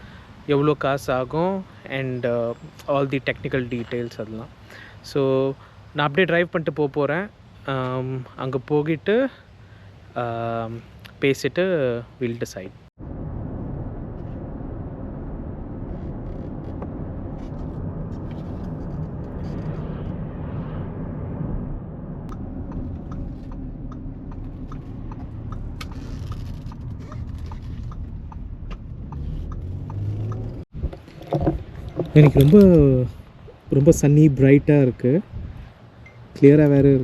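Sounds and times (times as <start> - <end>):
car road and engine rumble: 0.0 - 37.0
light ticks: 22.3 - 30.5.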